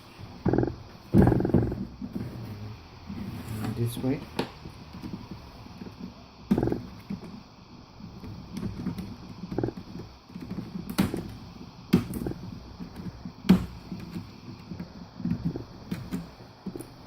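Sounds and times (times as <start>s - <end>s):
plastic parts clicking and knocking: 8.5s - 17.0s.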